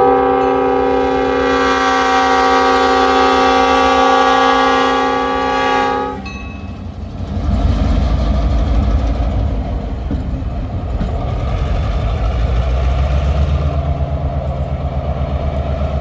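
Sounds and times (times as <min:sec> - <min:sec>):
diesel locomotive engine rumbling: 0:00.0 - 0:16.0.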